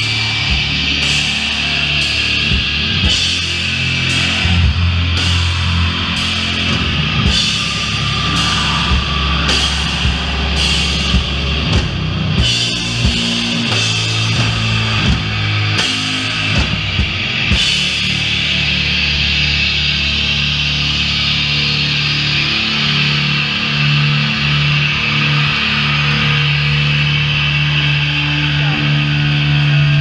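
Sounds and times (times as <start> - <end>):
drum and cymbal hits: 0.0 - 18.9
distorted guitars and bass: 0.0 - 30.0.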